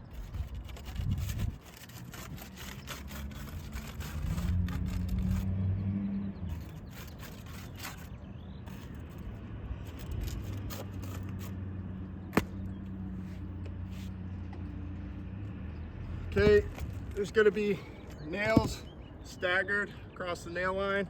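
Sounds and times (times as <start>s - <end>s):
metal tool scraping shingles: 0.0s - 5.6s, 6.5s - 11.6s.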